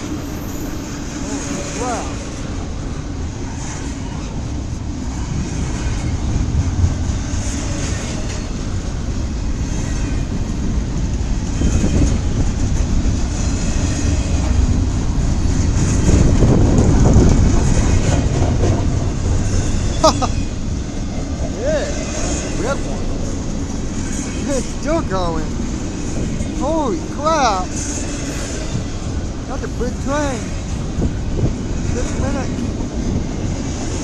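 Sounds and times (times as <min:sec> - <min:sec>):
steel wheels rumbling on rail: 0:00.0 - 0:34.0.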